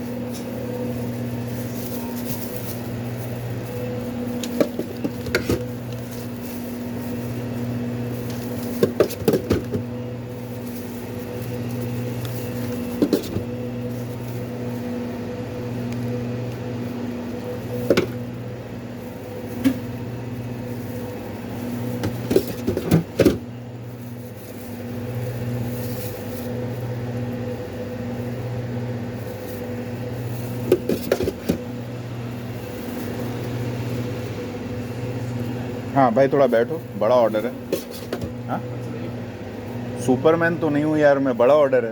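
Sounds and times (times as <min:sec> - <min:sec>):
kitchen appliance humming: 0:00.0 - 0:41.8
things being handled: 0:00.2 - 0:14.3, 0:21.6 - 0:23.4, 0:29.3 - 0:31.7, 0:37.3 - 0:38.4.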